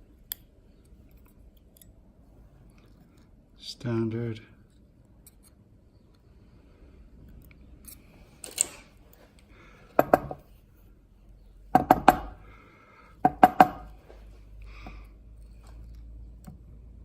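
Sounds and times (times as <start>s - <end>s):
small metal parts clicking: 0.2s - 2.0s, 4.6s - 6.2s, 7.2s - 9.0s.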